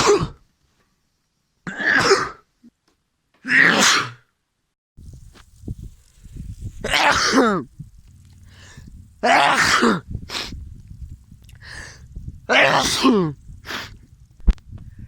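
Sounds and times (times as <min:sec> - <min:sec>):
person sneezing: 0:00.0 - 0:00.4, 0:01.7 - 0:02.5, 0:03.5 - 0:04.2, 0:06.9 - 0:07.6, 0:12.6 - 0:13.8.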